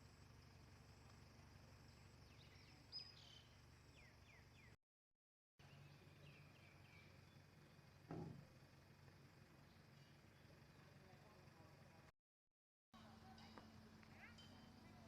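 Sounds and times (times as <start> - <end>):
faint outdoor hum: 0.0 - 4.8, 5.6 - 12.1, 13.0 - 15.0
faint bird chirps: 1.7 - 4.8, 5.6 - 8.1, 9.5 - 11.3.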